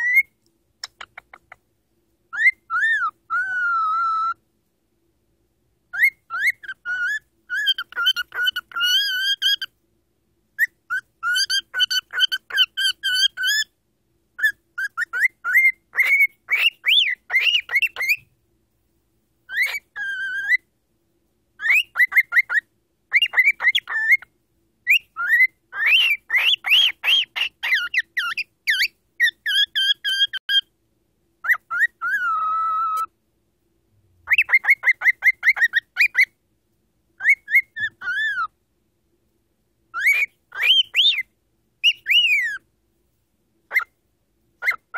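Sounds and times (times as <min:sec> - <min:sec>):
cockatiel whistling and chirping: 0:00.0 - 0:01.6, 0:02.3 - 0:04.4, 0:05.9 - 0:09.7, 0:10.6 - 0:13.7, 0:14.4 - 0:18.3, 0:19.5 - 0:20.7, 0:21.6 - 0:30.7, 0:31.4 - 0:33.1, 0:34.2 - 0:36.4, 0:37.2 - 0:38.6, 0:39.9 - 0:42.7, 0:43.7 - 0:44.0, 0:44.6 - 0:44.9.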